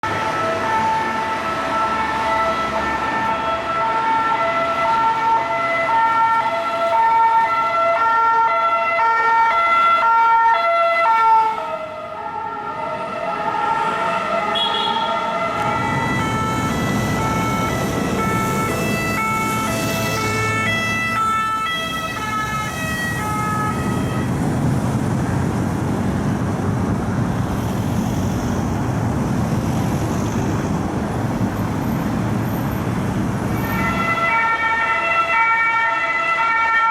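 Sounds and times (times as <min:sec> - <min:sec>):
two-tone ambulance siren: 0:00.0 - 0:24.8, 0:33.5 - 0:36.9
engine and traffic rumble: 0:00.0 - 0:36.9.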